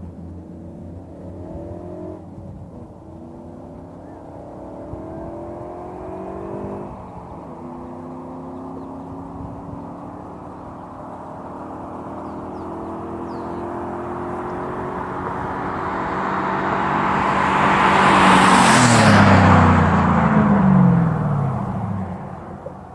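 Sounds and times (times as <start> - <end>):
pickup truck passing at speed: 10.7 - 22.9.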